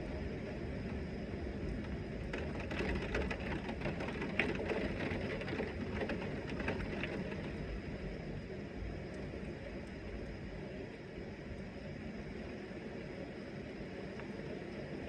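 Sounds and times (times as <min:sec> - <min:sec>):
heavy rain on hard surface: 0:01.8 - 0:07.8.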